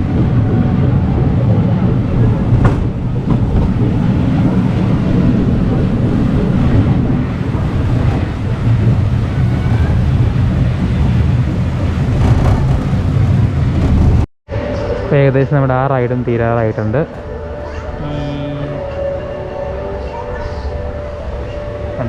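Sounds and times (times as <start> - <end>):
wind buffeting microphone: 0.0 - 14.3
amusement park ride rumbling: 0.0 - 22.0.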